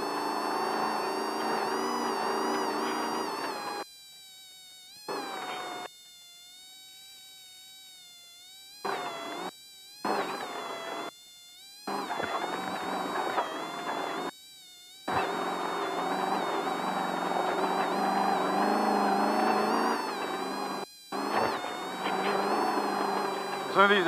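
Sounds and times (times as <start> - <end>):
high-pitched electrical whine: 0.0 - 7.1, 8.4 - 24.0
race car engine and rattle: 0.3 - 3.8, 15.1 - 23.8.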